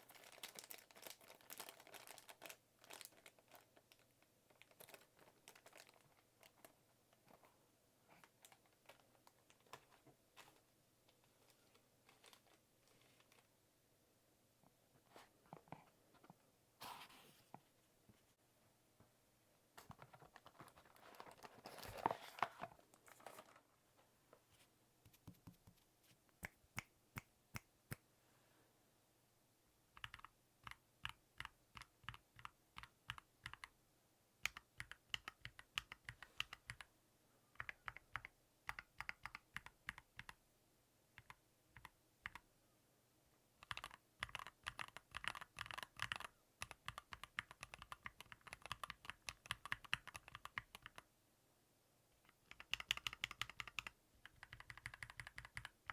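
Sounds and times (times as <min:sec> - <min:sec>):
handling noise rustling: 0:04.9 - 0:13.5, 0:19.0 - 0:24.8.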